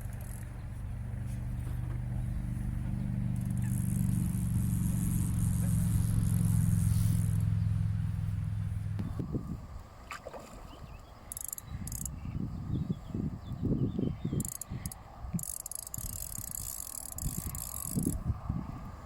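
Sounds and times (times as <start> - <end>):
fishing reel ratcheting: 0.0 - 0.5, 3.4 - 7.4, 11.3 - 12.1, 14.4 - 18.2.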